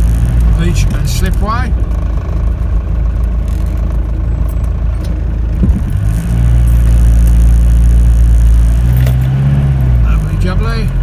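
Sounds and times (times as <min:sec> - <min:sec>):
engine and road noise: 0:00.0 - 0:11.0
brief knock: 0:05.6 - 0:05.9.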